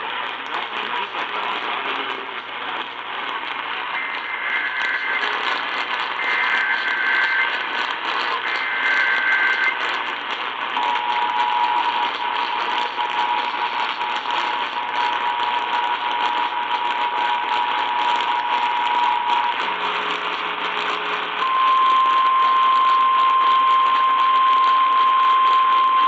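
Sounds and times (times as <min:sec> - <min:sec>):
radio static: 0:00.2 - 0:26.0
shrill two-tone data bursts: 0:04.0 - 0:09.9.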